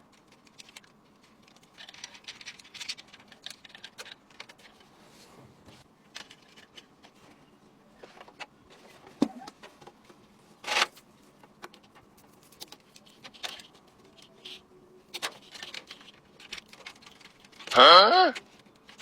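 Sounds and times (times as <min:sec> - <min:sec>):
computer parts clicking and tapping: 0:00.0 - 0:04.7.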